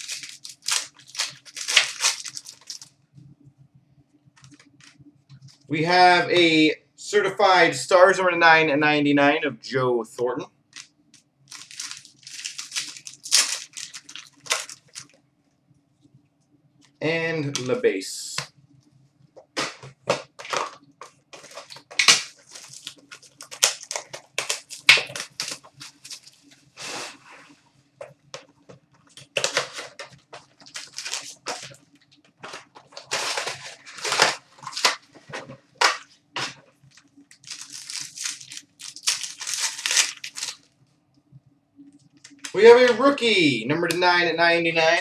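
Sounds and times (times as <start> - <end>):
card pack wrappers tearing: 0.0 - 2.9, 11.5 - 15.1, 19.6 - 26.4, 29.2 - 31.8, 32.4 - 36.6, 37.3 - 40.7, 42.2 - 43.0.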